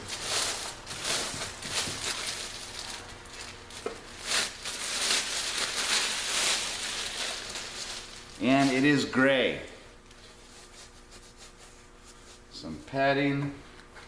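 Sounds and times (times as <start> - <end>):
packing material rustling and crinkling: 0.0 - 9.2.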